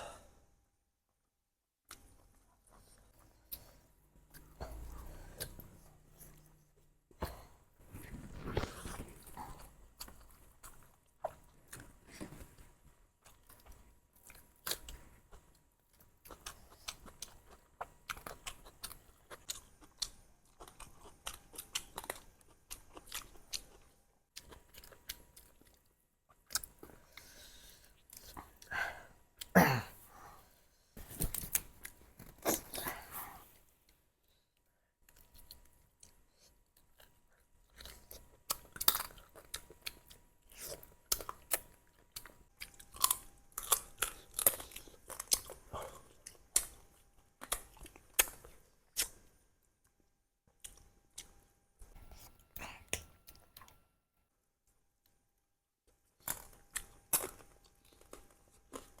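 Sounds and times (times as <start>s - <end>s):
chewing with wet crunchy clicks: 36.8s - 49.2s.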